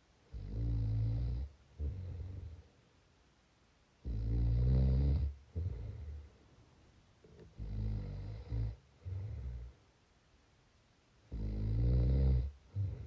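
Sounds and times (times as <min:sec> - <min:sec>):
person snoring: 0:04.0 - 0:06.2, 0:07.6 - 0:09.7, 0:11.3 - 0:13.0.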